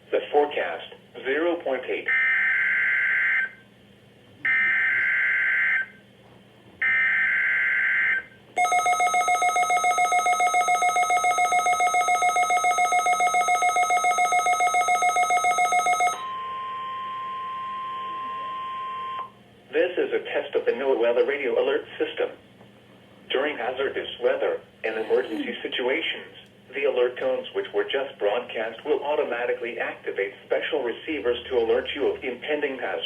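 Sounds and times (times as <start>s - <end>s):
pulsing alarm tone: 6.8s - 19.3s.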